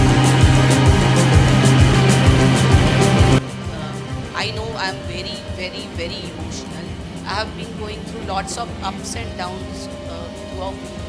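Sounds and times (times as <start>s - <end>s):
rock music with heavy beat: 0.0s - 4.4s.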